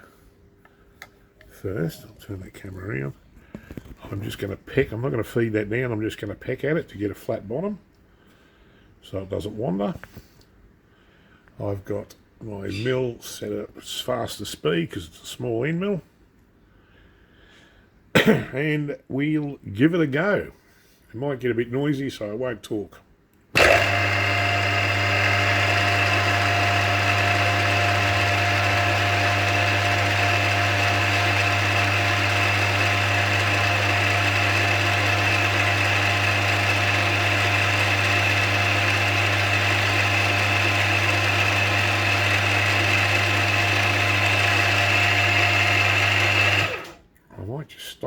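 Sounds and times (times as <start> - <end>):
milling machine motor hum and whine: 23.6 - 46.9.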